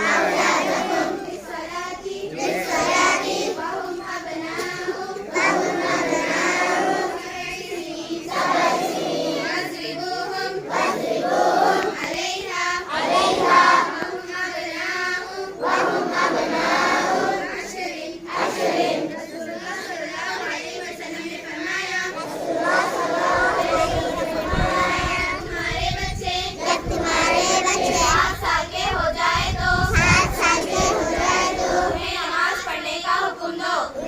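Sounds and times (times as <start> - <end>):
children singing: 0.0 - 34.0.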